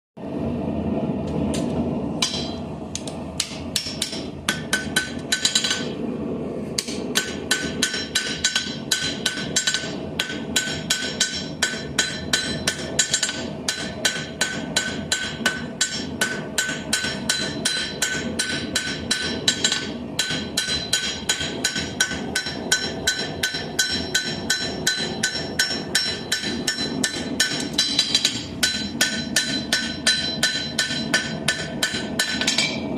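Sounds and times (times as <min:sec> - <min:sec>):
low rumble: 0:00.2 - 0:10.6
hammer striking steel on anvil: 0:01.6 - 0:06.0, 0:06.8 - 0:32.9.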